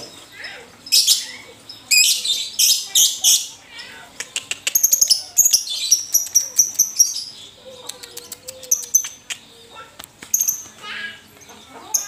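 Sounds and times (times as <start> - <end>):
lovebird chattering: 0.9 - 11.1.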